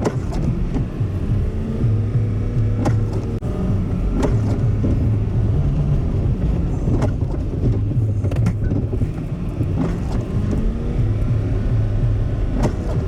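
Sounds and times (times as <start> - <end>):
truck engine and road hum: 0.0 - 13.0
short clicks or knocks: 2.7 - 3.4.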